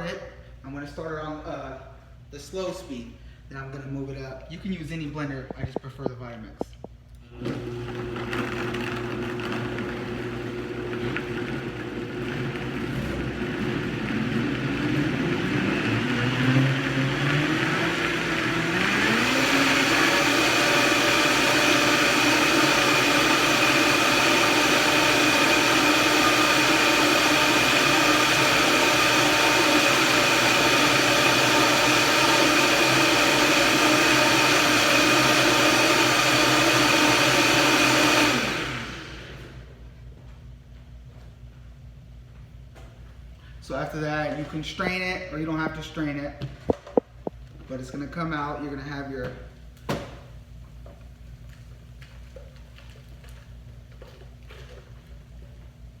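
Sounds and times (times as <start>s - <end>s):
blender motor running: 7.3s - 39.7s.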